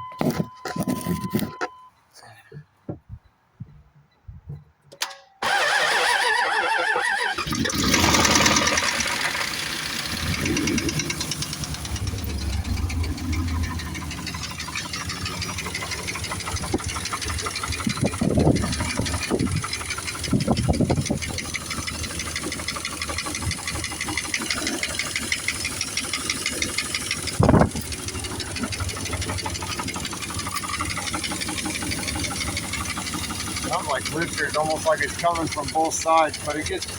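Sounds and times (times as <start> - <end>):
engine running with knocking: 7.4 - 36.9.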